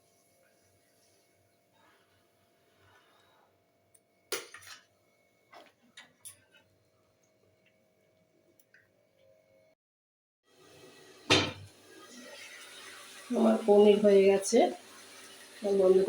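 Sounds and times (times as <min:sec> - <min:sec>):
utensils knocking on a cooking pan: 0:11.3 - 0:11.7.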